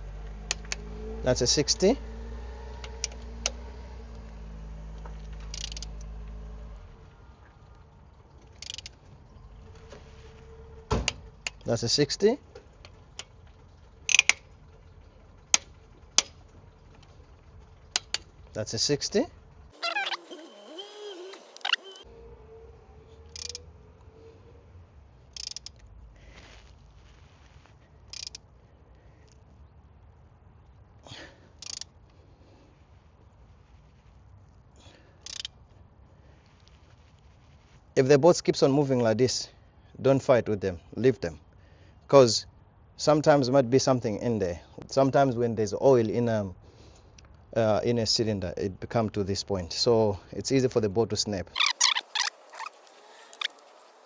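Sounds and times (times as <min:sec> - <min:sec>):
ratchet clicks: 0:02.8 - 0:03.6, 0:05.4 - 0:06.1, 0:08.5 - 0:09.0, 0:14.1 - 0:14.4, 0:23.3 - 0:23.6, 0:25.4 - 0:25.8, 0:28.1 - 0:28.4, 0:35.2 - 0:35.5
torque wrench clicking: 0:05.5 - 0:06.0, 0:14.1 - 0:14.4, 0:25.4 - 0:25.8.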